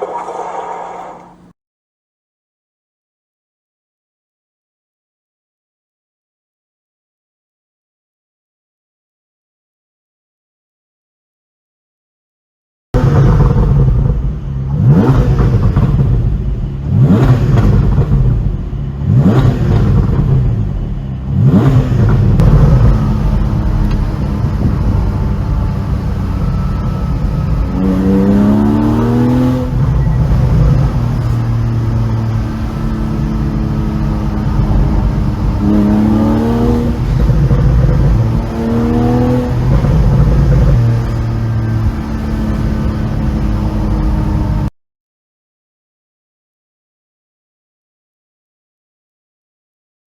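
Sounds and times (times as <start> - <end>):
car engine revving: 0.0 - 1.5, 13.0 - 44.7.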